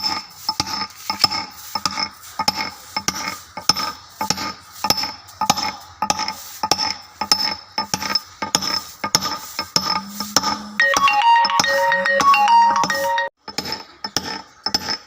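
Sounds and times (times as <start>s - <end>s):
hammer and chisel striking stone: 0.0s - 10.0s, 13.4s - 15.0s.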